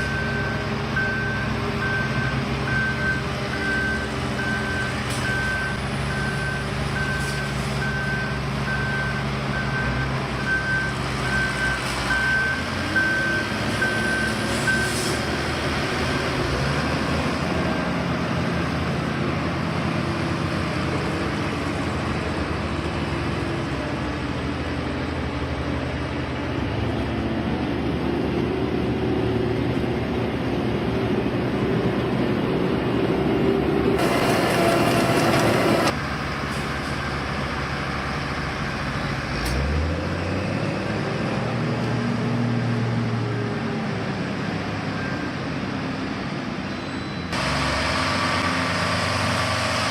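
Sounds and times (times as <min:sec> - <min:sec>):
reversing alarm beeping: 0:00.0 - 0:15.0
diesel construction machinery running: 0:00.0 - 0:49.9.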